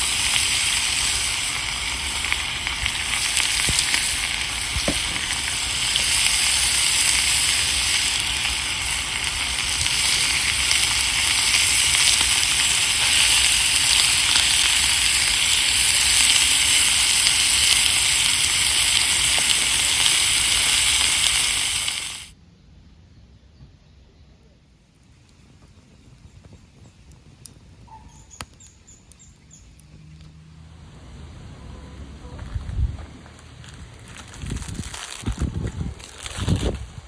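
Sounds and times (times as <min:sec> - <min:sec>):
food sizzling in a frying pan: 0:00.0 - 0:22.3.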